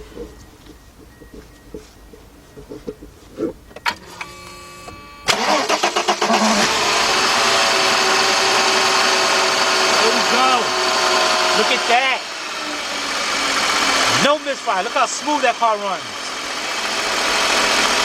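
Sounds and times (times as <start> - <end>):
engine starter cranking: 3.7 - 18.0
car engine idling: 5.3 - 18.0.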